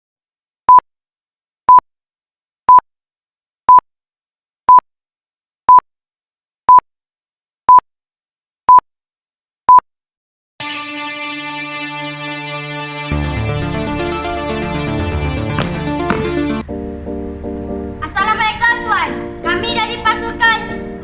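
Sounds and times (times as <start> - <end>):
music: 10.6 - 21.0.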